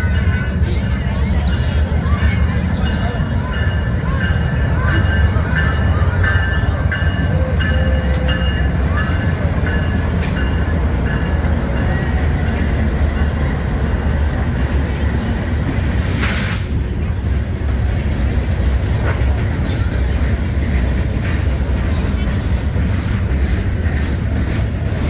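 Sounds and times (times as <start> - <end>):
train rumbling past: 0.0 - 25.0
train wheel squeals: 3.6 - 13.6, 19.0 - 25.0
short sharp hiss: 16.0 - 16.7.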